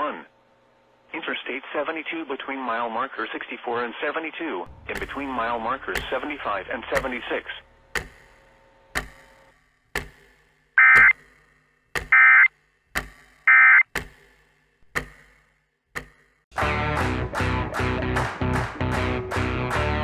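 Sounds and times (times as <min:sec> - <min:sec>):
sharp ticking: 0:04.7 - 0:16.4
buzzing data bursts: 0:10.8 - 0:11.3, 0:12.1 - 0:12.6, 0:13.4 - 0:13.9.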